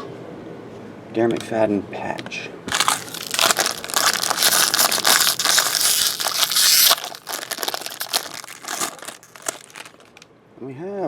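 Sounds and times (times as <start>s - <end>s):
plastic packaging crinkling: 2.7s - 10.2s.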